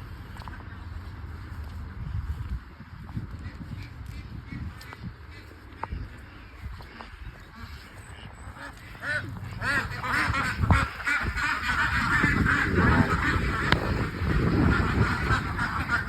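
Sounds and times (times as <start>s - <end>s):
flock of waterfowl calling: 3.3s - 16.0s.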